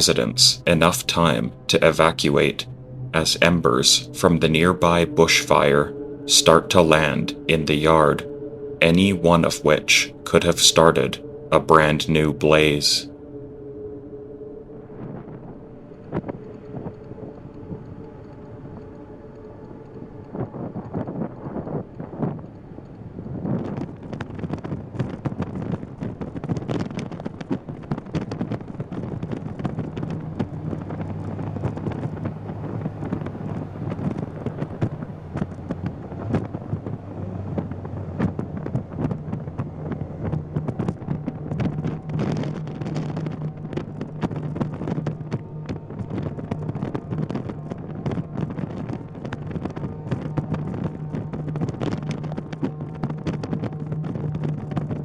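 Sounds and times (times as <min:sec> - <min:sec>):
low engine hum: 0:00.0 - 0:55.0
wind buffeting microphone: 0:13.1 - 0:55.0.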